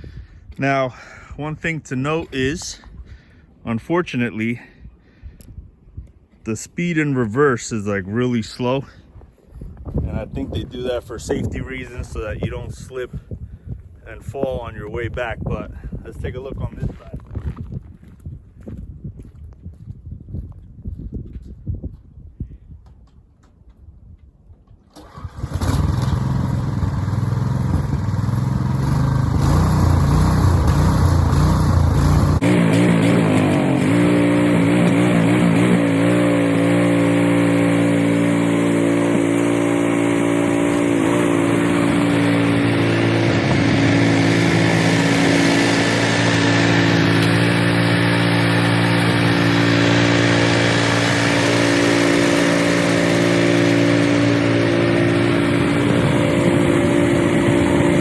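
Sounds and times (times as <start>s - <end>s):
snowblower engine running: 25.0s - 58.0s.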